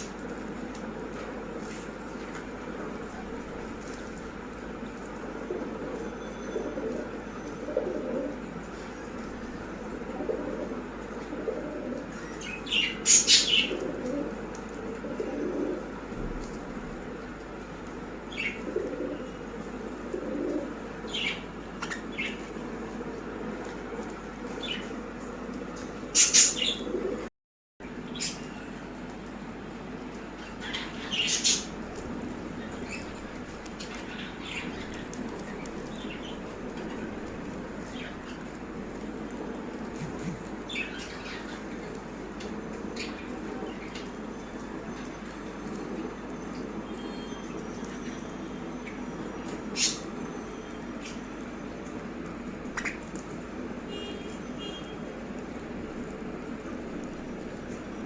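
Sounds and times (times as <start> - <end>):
pigeons cooing: 4.9 - 16.8, 18.3 - 23.6, 26.1 - 27.3
birds chirping: 29.8 - 57.6.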